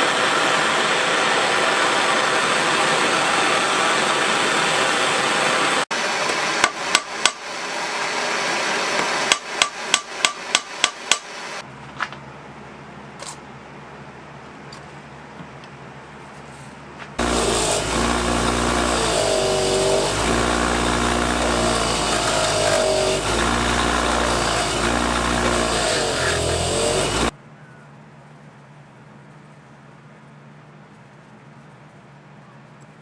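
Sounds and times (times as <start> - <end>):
hammer striking metal tool: 6.6 - 7.4, 9.3 - 11.3.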